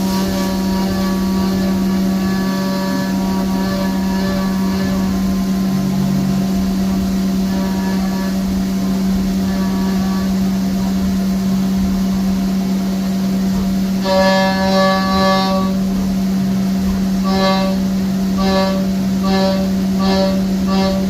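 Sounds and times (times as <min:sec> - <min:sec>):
milling machine spindle tone: 0:00.0 - 0:12.5, 0:16.8 - 0:21.0
cutter ringing whine: 0:00.0 - 0:21.0.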